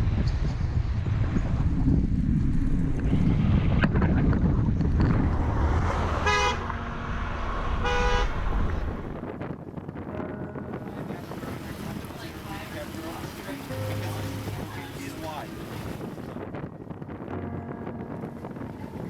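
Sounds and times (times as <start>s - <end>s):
wind rumble: 0.0s - 19.0s
horn beeps: 6.3s - 6.9s, 7.8s - 8.6s.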